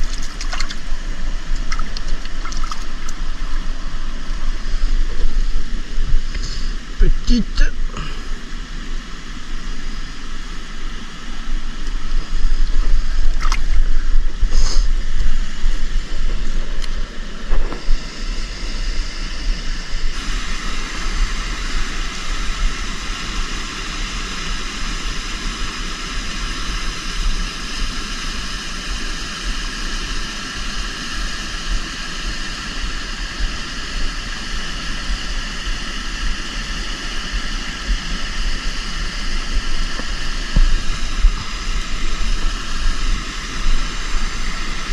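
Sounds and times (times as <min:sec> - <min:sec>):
wind rumbling on microphone: 0:00.0 - 0:07.2, 0:07.8 - 0:24.4, 0:35.1 - 0:44.9
river water rushing: 0:00.0 - 0:12.4.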